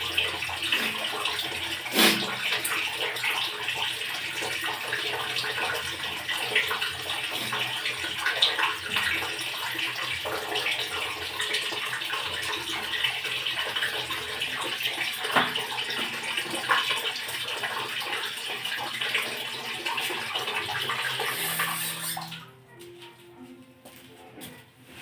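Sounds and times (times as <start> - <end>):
water running from a tap: 0.0 - 22.5.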